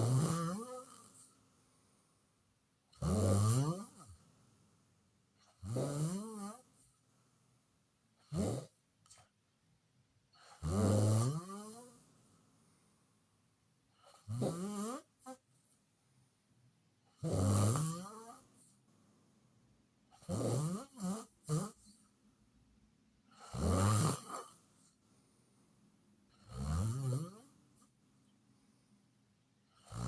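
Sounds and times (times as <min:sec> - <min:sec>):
loud snoring: 0:00.0 - 0:01.3, 0:03.0 - 0:04.2, 0:05.4 - 0:06.8, 0:08.2 - 0:08.8, 0:10.4 - 0:12.0, 0:14.0 - 0:15.4, 0:17.1 - 0:18.5, 0:20.2 - 0:21.9, 0:23.3 - 0:24.7, 0:26.3 - 0:27.5, 0:29.8 - 0:30.0.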